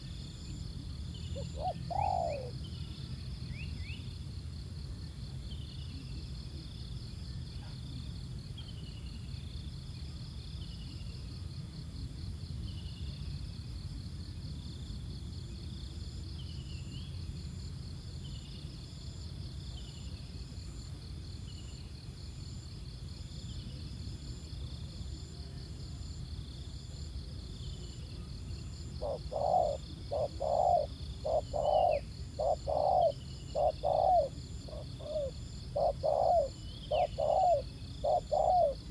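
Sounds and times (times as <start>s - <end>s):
dove cooing: 1.4s - 2.6s, 28.8s - 38.9s
high insect drone: 11.2s - 38.9s
small bird chirping: 29.0s - 38.9s.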